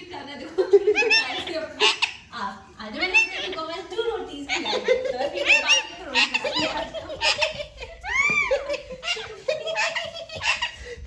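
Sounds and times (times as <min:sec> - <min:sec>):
people laughing hard: 0:04.5 - 0:11.0.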